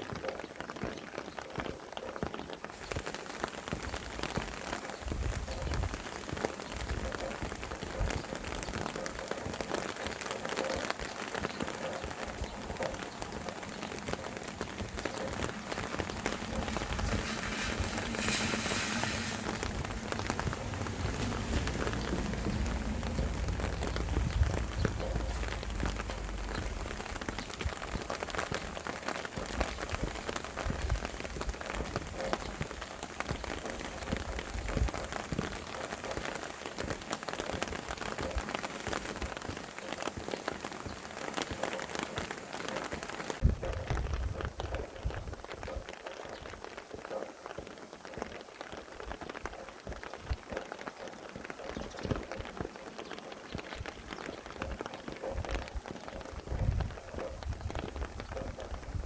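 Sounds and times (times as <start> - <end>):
rain pattering: 0.0 - 59.0
low wind rumble: 12.2 - 33.0.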